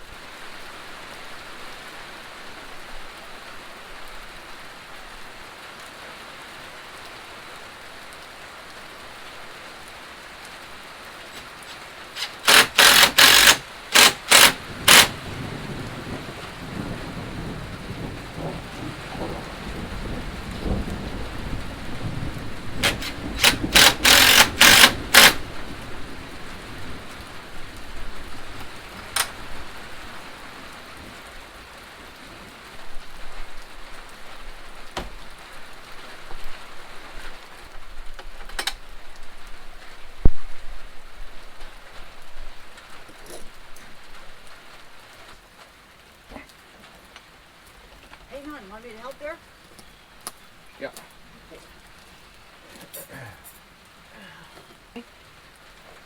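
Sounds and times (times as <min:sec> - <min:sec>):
rain on a tin roof: 0:00.0 - 0:56.0
thunder cracks and rumble: 0:14.8 - 0:23.4.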